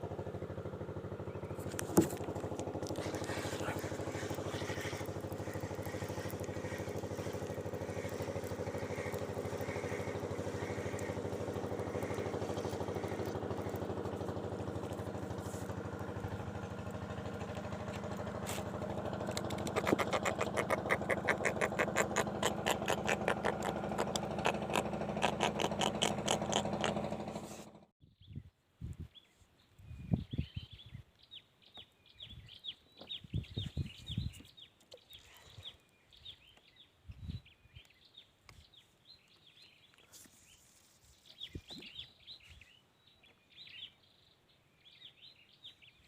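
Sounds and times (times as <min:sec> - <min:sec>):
small engine running: 0:00.0 - 0:27.9.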